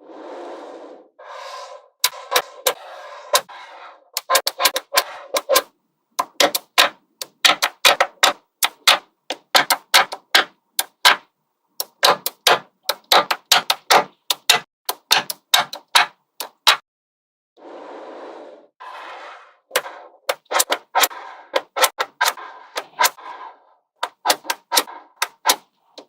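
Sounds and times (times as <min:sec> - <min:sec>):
magnetic balls clicking: 0:02.0 - 0:02.8, 0:04.2 - 0:16.7, 0:24.0 - 0:26.0.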